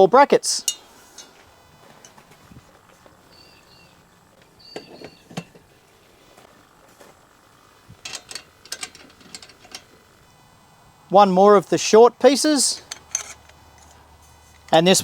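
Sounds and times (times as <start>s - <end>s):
faint high chirps: 3.3s - 5.4s
metal parts clicking and knocking: 8.0s - 9.9s, 12.8s - 13.5s.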